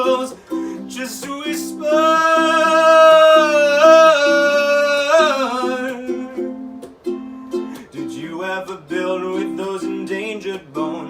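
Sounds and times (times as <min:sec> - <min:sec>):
strummed acoustic string instrument: 0:00.0 - 0:11.0
person singing a long note: 0:01.7 - 0:06.5.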